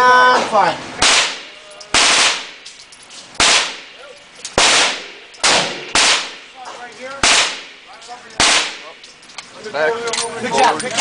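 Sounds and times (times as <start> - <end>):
loud gunshots with echo: 1.0 - 2.6, 3.4 - 4.0, 4.6 - 6.6, 7.2 - 9.0.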